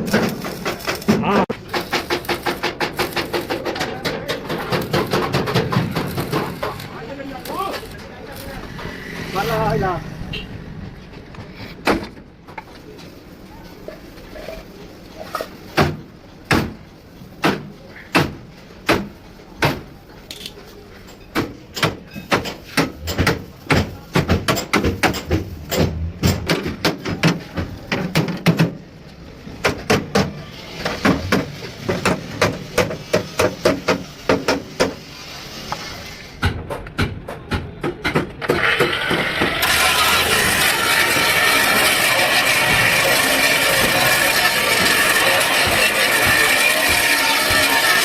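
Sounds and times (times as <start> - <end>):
hammer blows: 0.1 - 12.2, 36.4 - 48.0.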